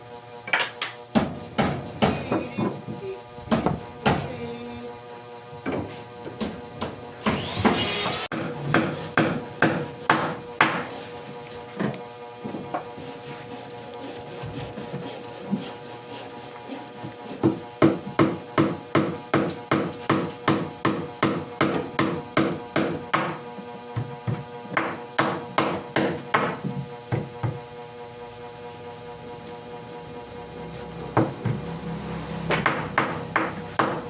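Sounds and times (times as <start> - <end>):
hammer striking wood: 1.1 - 2.5, 7.3 - 11.0, 17.2 - 23.4, 24.0 - 27.6, 32.5 - 34.0.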